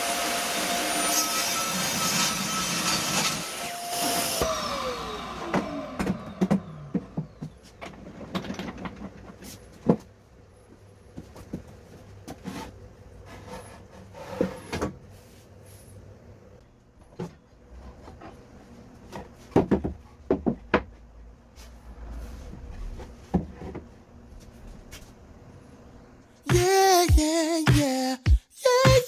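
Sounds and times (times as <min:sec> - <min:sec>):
power tool motor winding down: 0:00.0 - 0:07.0.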